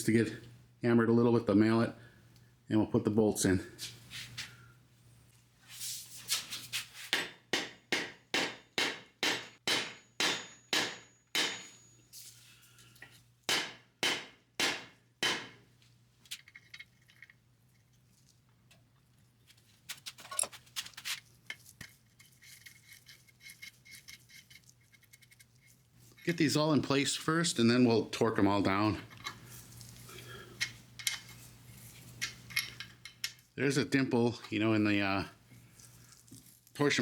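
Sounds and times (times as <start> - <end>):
mallet hammering metal: 7.2 - 11.9, 13.5 - 15.6
metallic clinks and rattles: 16.3 - 18.4, 20.1 - 26.4, 29.0 - 33.5.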